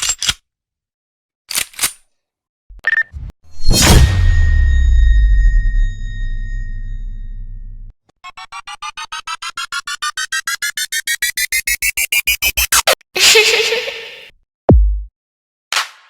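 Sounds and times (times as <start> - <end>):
electronic beeps rising in pitch: 9.6 - 13.0.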